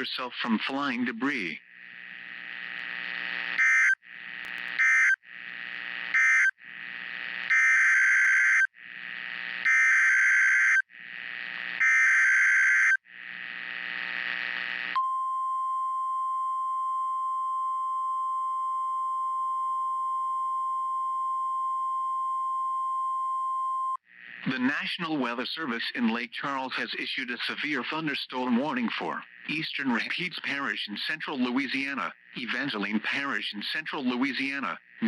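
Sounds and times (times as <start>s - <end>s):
steady warning alarm tone: 3.6s - 4.0s, 4.8s - 5.2s, 6.1s - 6.6s, 7.5s - 8.7s, 9.6s - 10.8s, 11.8s - 13.0s.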